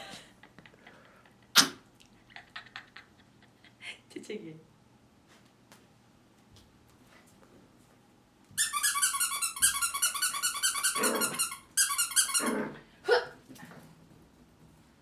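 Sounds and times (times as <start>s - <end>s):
puppy squeaking: 8.6s - 12.5s
puppy growling: 10.9s - 11.5s, 12.3s - 12.9s.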